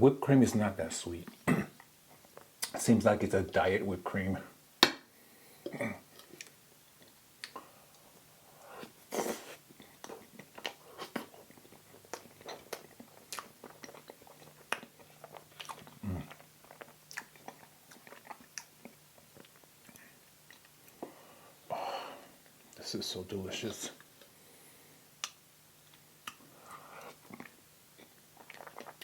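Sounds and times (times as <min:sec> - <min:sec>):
wet chewing and mouth sounds: 0:06.1 - 0:21.2, 0:25.2 - 0:29.0.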